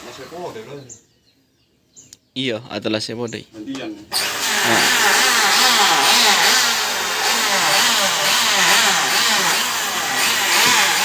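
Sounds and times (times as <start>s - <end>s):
wood planing machine cutting: 0.0s - 0.7s, 4.1s - 11.0s.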